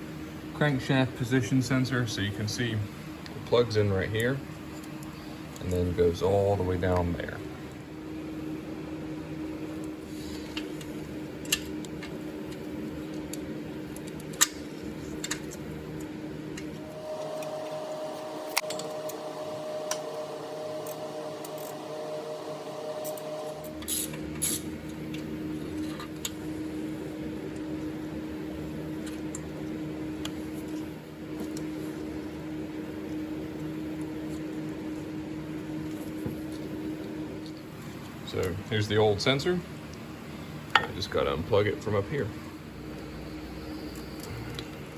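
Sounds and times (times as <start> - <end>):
machine hum: 0.0 - 44.9.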